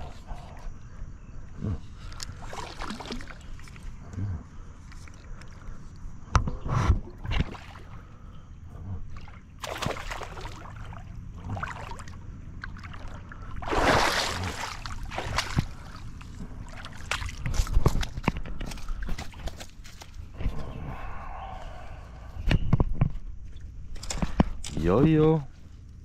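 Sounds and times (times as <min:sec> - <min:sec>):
water sloshing around a boat: 0:00.0 - 0:20.6.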